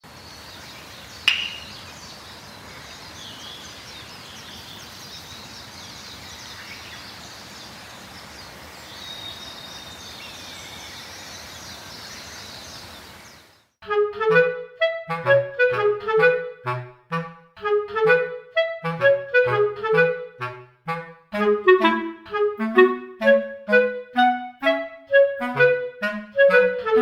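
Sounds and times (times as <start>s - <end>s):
steady outdoor hiss: 0.0s - 13.6s
small birds chirping: 0.1s - 13.8s
sharp loud bang: 1.3s - 1.8s
clarinet melody: 13.8s - 27.0s.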